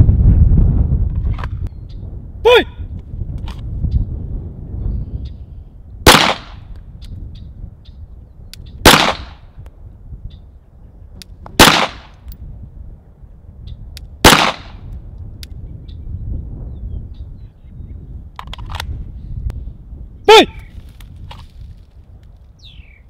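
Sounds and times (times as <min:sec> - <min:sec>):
pistol shots: 0:06.1 - 0:06.6, 0:08.8 - 0:09.4, 0:11.6 - 0:12.2, 0:14.2 - 0:14.8.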